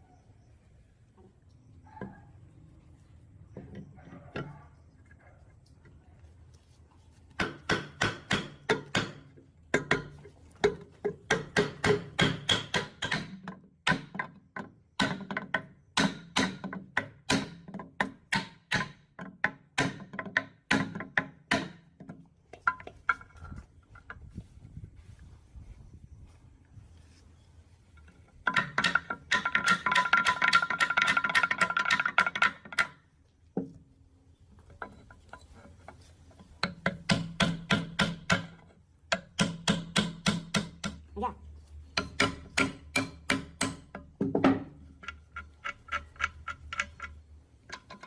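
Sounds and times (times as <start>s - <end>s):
hammer striking metal: 42.0s - 43.9s.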